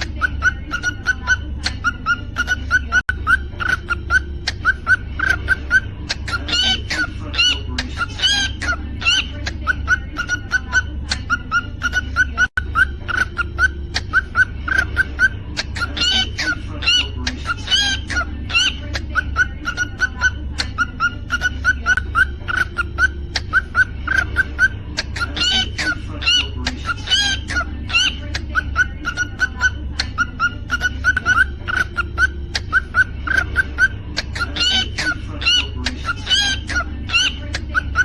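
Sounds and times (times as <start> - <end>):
cockatiel chirping: 0.0 - 38.0
steady low hum: 0.0 - 38.0
cockatiel whistled calls: 0.2 - 9.3, 28.8 - 38.0.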